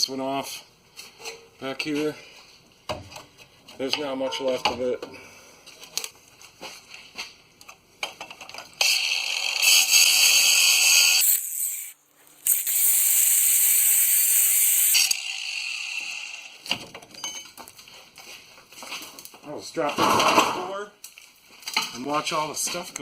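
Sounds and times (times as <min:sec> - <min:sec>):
angle grinder cutting metal: 0:08.8 - 0:16.7.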